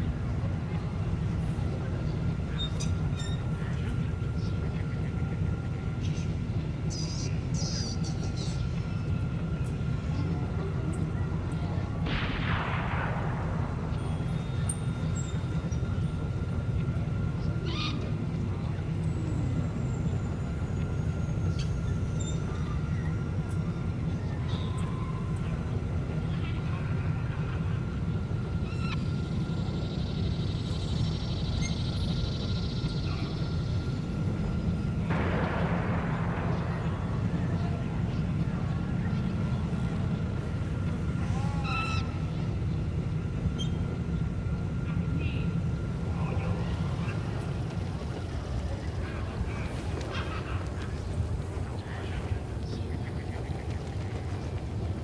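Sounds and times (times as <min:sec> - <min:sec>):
faint high whine: 0:00.0 - 0:55.0
low rumble: 0:11.6 - 0:17.0, 0:33.4 - 0:42.6.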